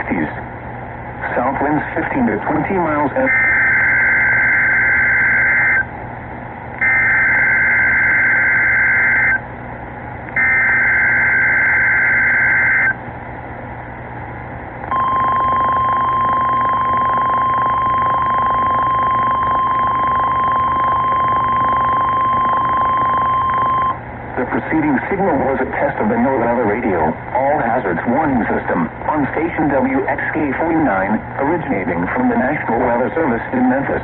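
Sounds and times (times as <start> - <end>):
receiver hiss: 0.0 - 34.0
steady alarm tone: 3.2 - 5.9, 6.8 - 9.4, 10.4 - 13.0, 14.9 - 24.0.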